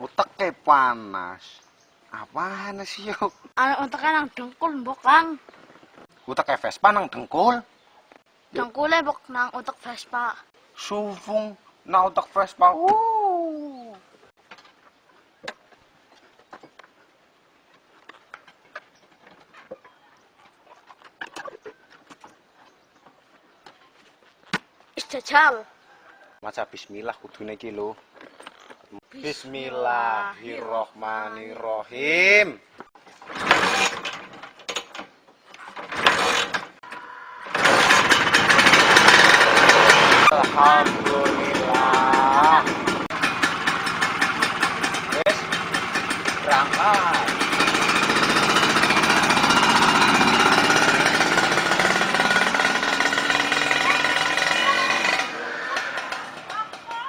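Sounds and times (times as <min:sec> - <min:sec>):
scooter engine sputtering: 0:33.2 - 0:34.2, 0:35.7 - 0:57.0
scooter engine running: 0:33.3 - 0:34.1, 0:35.7 - 0:57.0.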